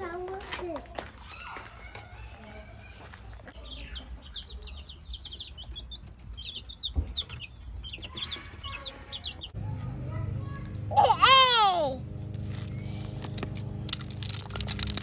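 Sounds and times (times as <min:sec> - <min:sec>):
baby chicks peeping: 0:01.9 - 0:09.6.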